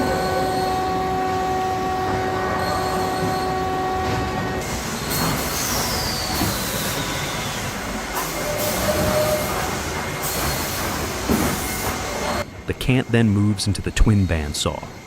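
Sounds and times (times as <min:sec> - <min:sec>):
high squeal sliding down: 0:00.0 - 0:09.8
sawmill machinery clatter and grind: 0:00.0 - 0:12.5.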